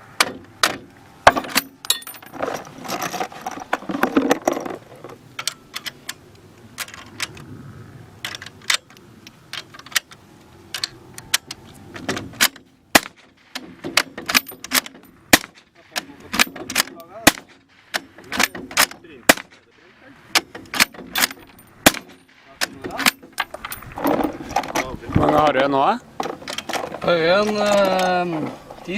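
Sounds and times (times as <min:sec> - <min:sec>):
suppressed gunshots: 0:12.4 - 0:15.6, 0:16.4 - 0:22.7.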